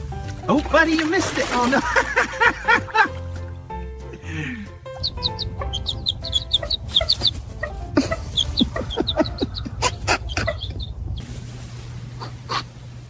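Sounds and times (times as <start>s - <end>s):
birds chirping: 4.1s - 11.3s.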